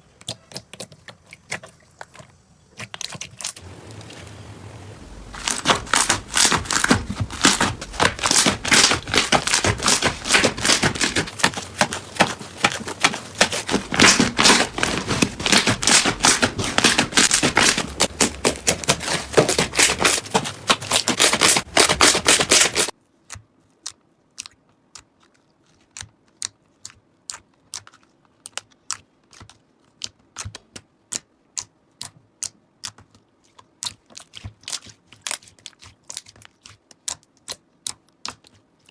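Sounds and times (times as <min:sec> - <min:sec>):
slime squished by hand: 0:05.0 - 0:22.9.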